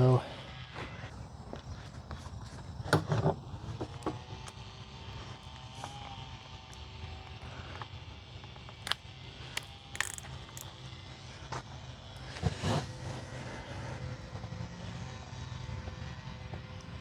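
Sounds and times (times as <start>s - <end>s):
small hard parts clicking: 6.7s - 10.8s.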